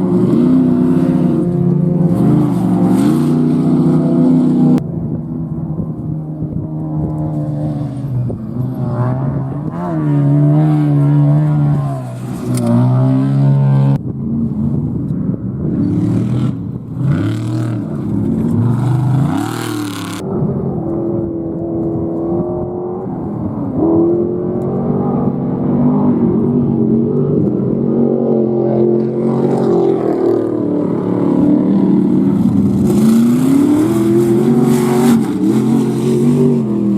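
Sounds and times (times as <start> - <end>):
race vehicle engines revving: 0.0 - 36.9.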